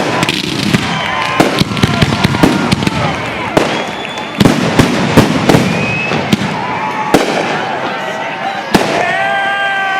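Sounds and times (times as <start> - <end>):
whistling firework shells: 0.0 - 8.1
fireworks bangs and crackling: 0.0 - 9.9.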